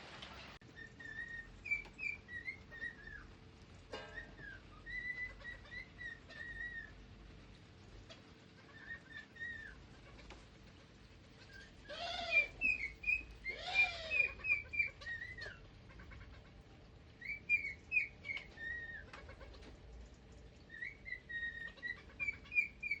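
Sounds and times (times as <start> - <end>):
small birds chirping and whistling: 0.6 - 3.4, 4.0 - 7.1, 8.1 - 10.4, 11.3 - 16.5, 17.1 - 19.6, 20.6 - 23.0
harsh bird calls: 11.4 - 16.5.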